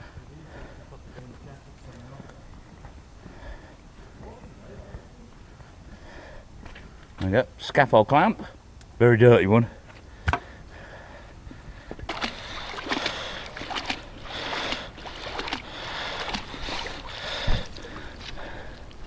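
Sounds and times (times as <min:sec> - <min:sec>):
water splashing and sloshing: 0:11.6 - 0:19.0.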